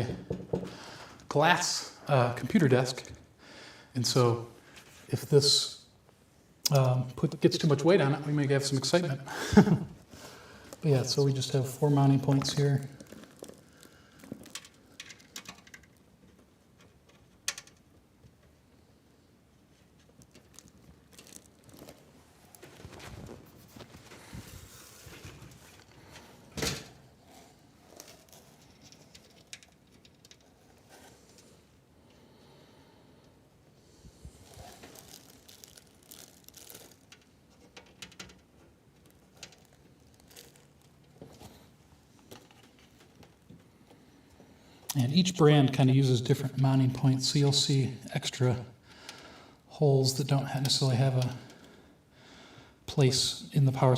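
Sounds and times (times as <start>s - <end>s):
small clicks and rustles: 12.3s - 18.6s, 19.7s - 26.3s, 27.3s - 32.2s, 34.4s - 45.0s.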